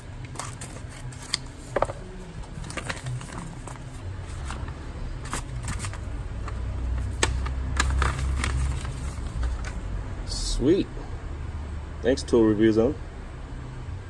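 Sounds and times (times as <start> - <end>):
packaging rustling and crinkling: 0.0 - 9.9.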